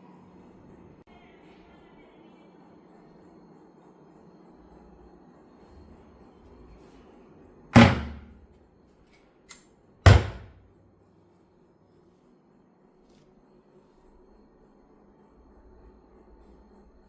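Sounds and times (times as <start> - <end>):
cabinet doors shutting: 7.8 - 8.4, 10.1 - 10.6.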